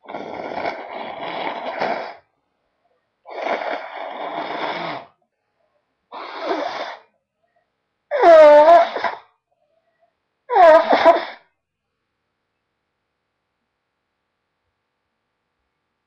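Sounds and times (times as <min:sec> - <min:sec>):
person blowing nose: 0:00.0 - 0:02.3, 0:03.3 - 0:05.1, 0:06.1 - 0:07.1, 0:08.1 - 0:09.2, 0:10.5 - 0:11.4.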